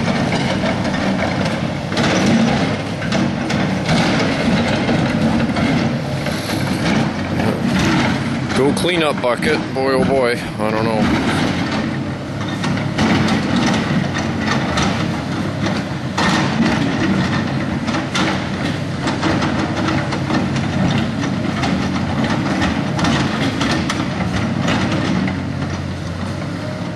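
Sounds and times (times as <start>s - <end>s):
metallic clanks and scrapes: 0.0s - 11.8s
excavator diesel engine running: 0.0s - 26.9s.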